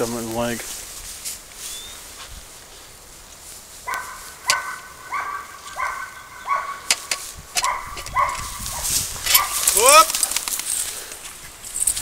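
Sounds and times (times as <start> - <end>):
dog barking: 3.9 - 6.9, 7.6 - 9.6
sharp clicks: 9.2 - 10.8.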